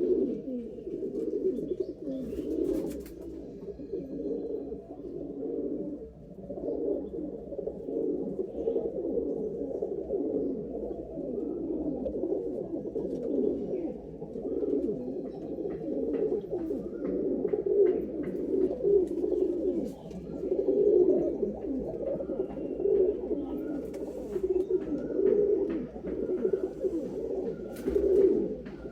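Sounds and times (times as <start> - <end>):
pigeons cooing: 0.0 - 28.9.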